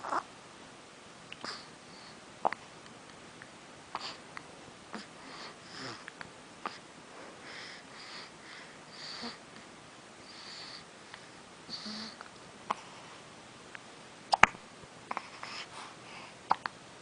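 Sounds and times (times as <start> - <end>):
baby breathing softly: 3.9 - 4.2, 4.9 - 9.4, 10.2 - 13.3, 15.1 - 16.6
baby hiccupping: 14.3 - 14.6.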